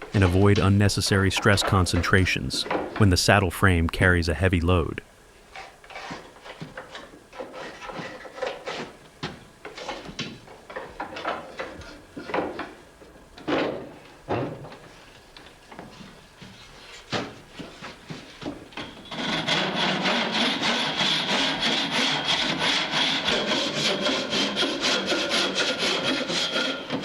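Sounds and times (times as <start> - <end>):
wood scraping: 5.5 - 9.0.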